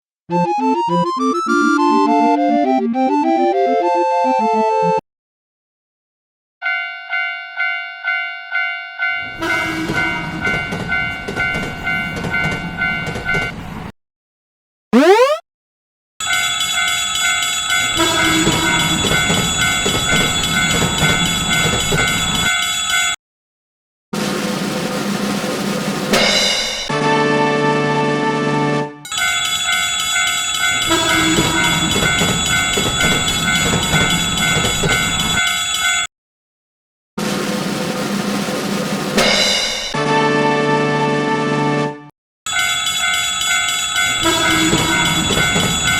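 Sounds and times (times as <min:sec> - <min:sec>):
railroad crossing bell clanging: 0:06.6 - 0:13.6, 0:16.2 - 0:23.2, 0:29.1 - 0:36.1, 0:42.5 - 0:45.9.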